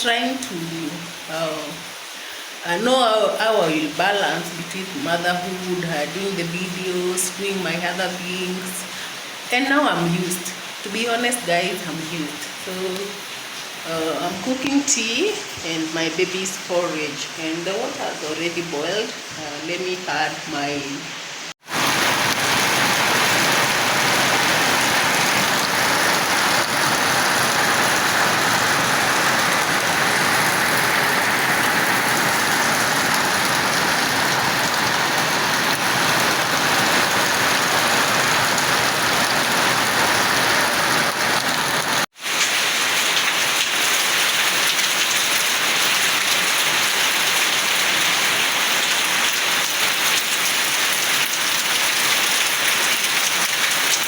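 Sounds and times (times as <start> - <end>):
steady rain falling: 0.0 - 54.0.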